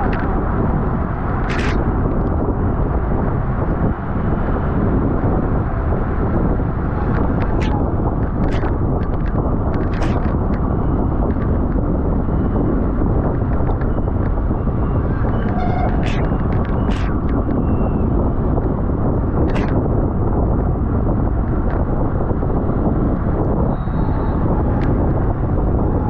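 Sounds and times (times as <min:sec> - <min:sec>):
wind rushing over microphone: 0:00.0 - 0:26.0.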